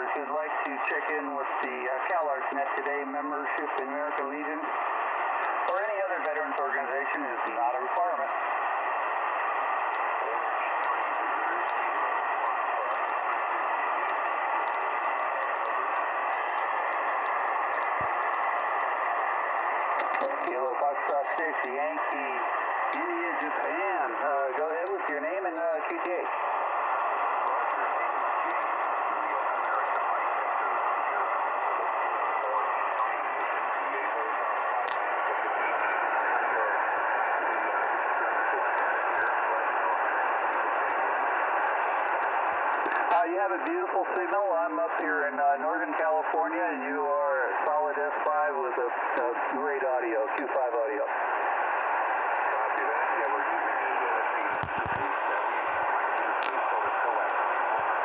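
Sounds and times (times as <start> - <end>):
radio static hiss: 0.0 - 58.0
faint atmospheric ticks: 9.6 - 26.5
faint clicks: 10.8 - 20.6, 34.3 - 43.2, 54.2 - 57.9.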